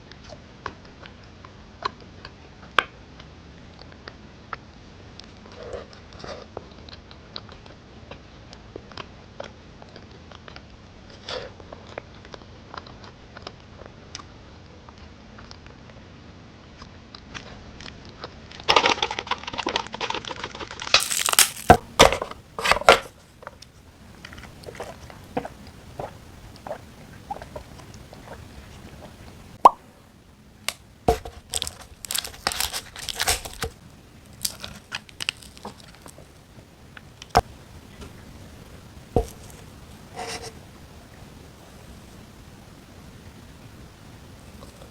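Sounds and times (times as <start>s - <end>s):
plastic packaging crinkling and tearing: 18.8s - 29.2s, 30.7s - 37.5s, 39.2s - 40.5s.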